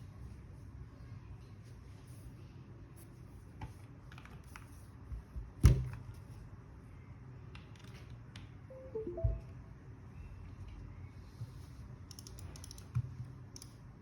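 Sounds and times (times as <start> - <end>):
low steady hum: 8.7 - 10.4.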